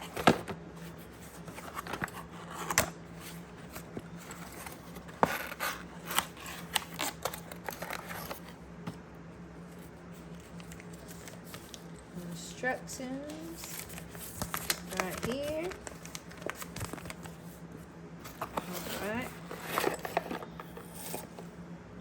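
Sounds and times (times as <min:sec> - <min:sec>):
packaging rustling: 0:00.0 - 0:08.6, 0:09.7 - 0:12.0, 0:13.3 - 0:21.5
packaging scrapes: 0:01.1 - 0:08.5, 0:13.4 - 0:17.6, 0:18.3 - 0:21.4.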